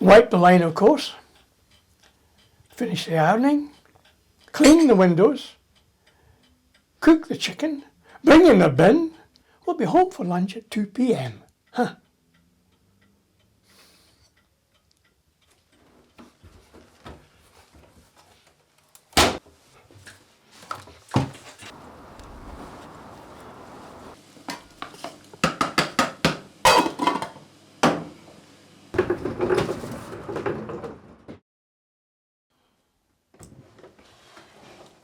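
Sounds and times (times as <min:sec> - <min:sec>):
dishes and cutlery clattering: 0:26.7 - 0:27.4.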